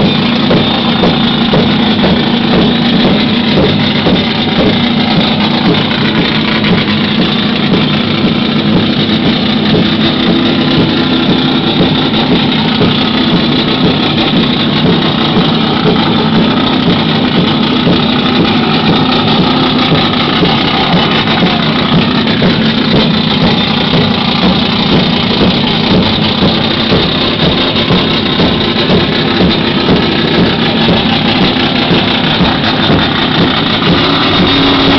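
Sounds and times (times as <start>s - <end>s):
car engine idling: 0.0s - 34.9s.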